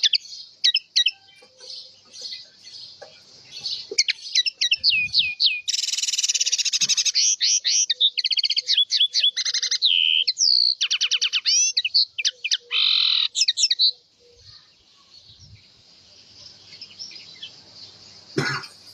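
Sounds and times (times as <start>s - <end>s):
finch warbling song: 3.6s - 7.9s.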